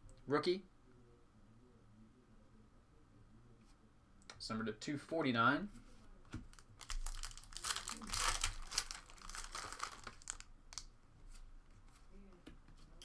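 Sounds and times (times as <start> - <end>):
cards rustling: 6.5 - 10.4
card pack wrapper crinkling: 6.5 - 10.9.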